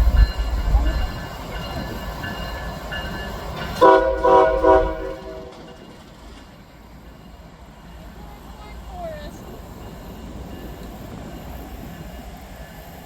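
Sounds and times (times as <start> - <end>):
passing train rumble: 0.0 - 13.0
train horn blasts: 3.8 - 5.8.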